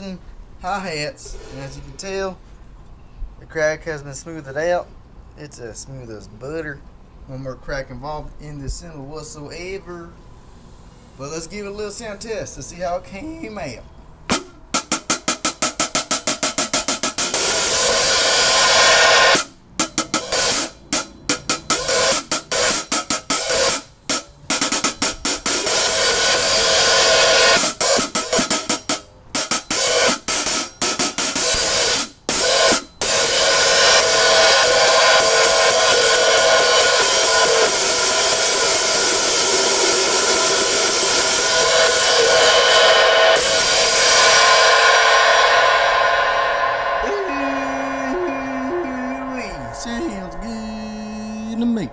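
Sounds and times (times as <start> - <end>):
continuous cymbal wash: 9.2 - 51.9
hi-hat cymbal strikes: 14.3 - 51.9.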